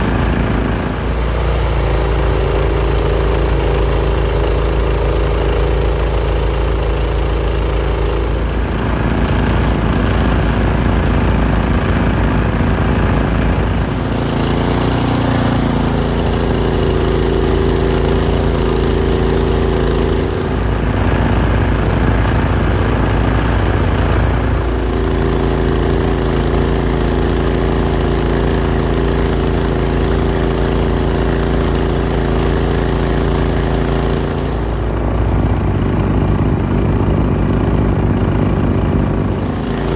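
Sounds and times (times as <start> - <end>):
small locomotive engine running: 0.0 - 39.9.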